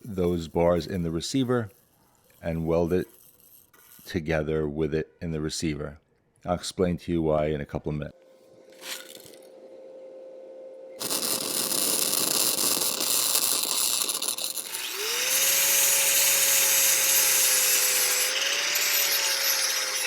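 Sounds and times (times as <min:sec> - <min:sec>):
power tool grinding steel: 0:11.0 - 0:20.0
motor whine: 0:14.6 - 0:20.0.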